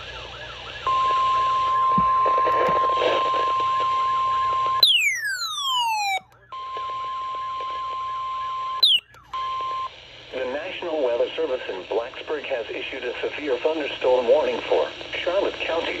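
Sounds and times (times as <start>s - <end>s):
fast repeating warble: 8.8s - 9.1s
high alert beep: 8.8s - 9.1s.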